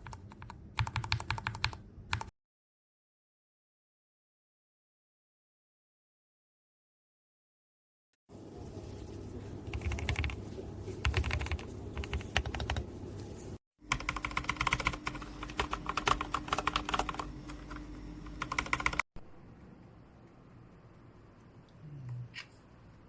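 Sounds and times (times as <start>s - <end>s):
mechanical keyboard typing: 0.0s - 2.3s, 9.7s - 10.4s, 11.0s - 12.9s, 13.8s - 19.0s.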